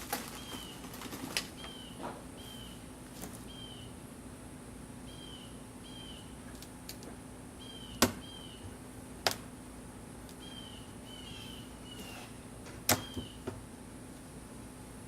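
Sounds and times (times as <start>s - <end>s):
honeybees humming: 0.0s - 15.0s
bird chirps: 1.6s - 2.8s, 3.5s - 3.9s, 5.0s - 6.4s, 7.6s - 8.7s, 10.4s - 12.4s, 13.0s - 13.4s
hive parts popping loose: 7.9s - 8.3s, 12.6s - 13.6s.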